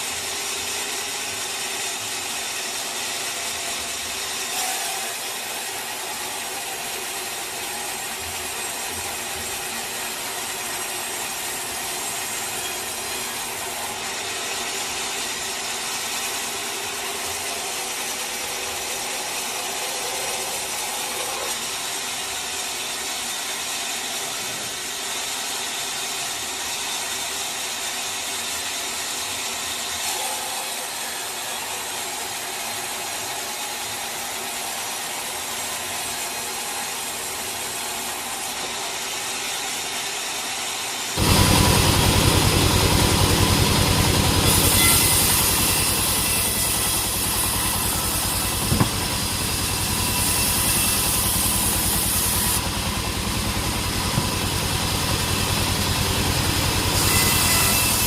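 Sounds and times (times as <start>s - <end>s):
bandsaw sawmill cutting log: 0.0s - 58.0s.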